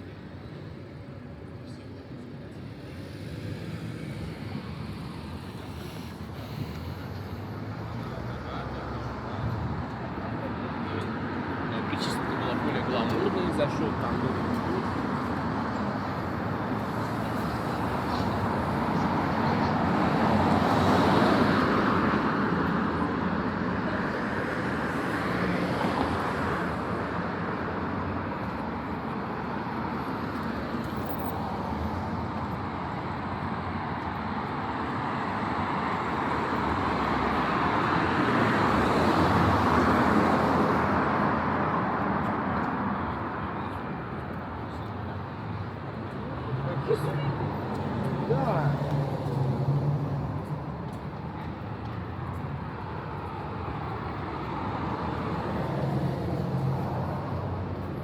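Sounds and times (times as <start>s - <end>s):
cars passing on city street: 0.0s - 58.0s.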